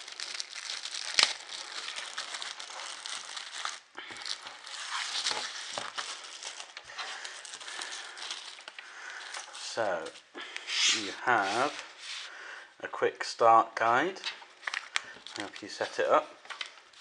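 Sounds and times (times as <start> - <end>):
sharp paper crackle: 0.0 - 10.2
packaging and paper rustling: 0.0 - 10.3, 10.9 - 12.3, 14.6 - 17.0.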